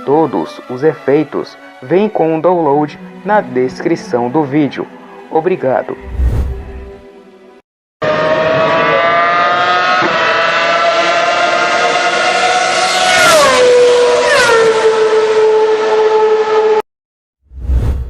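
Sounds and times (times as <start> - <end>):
racing car engine at high revs: 8.0 - 16.8.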